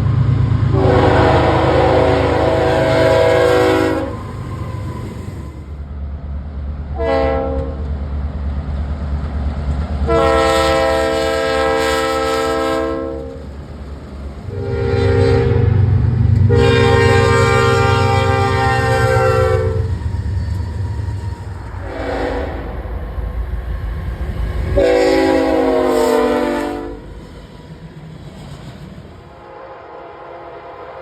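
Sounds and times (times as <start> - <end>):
train rumble: 0.0 - 31.0
locomotive horn blasts: 0.7 - 4.3, 7.0 - 7.8, 10.0 - 13.4, 14.5 - 20.1, 21.6 - 22.8, 24.8 - 27.1, 29.4 - 31.0.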